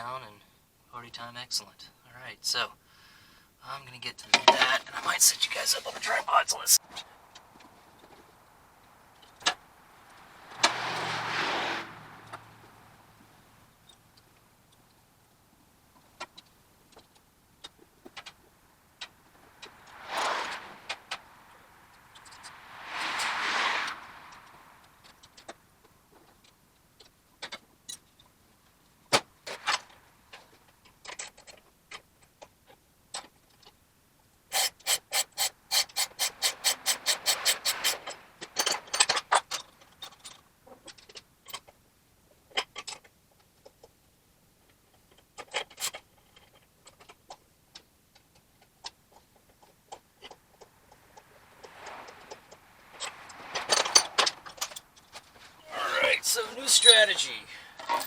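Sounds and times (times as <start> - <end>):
hand tools clinking: 51.8 - 58.0.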